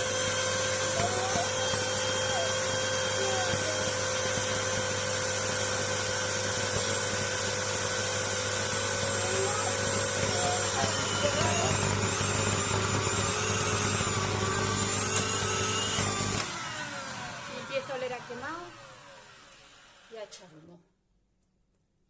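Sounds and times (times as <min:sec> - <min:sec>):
vacuum cleaner running: 0:00.0 - 0:20.7.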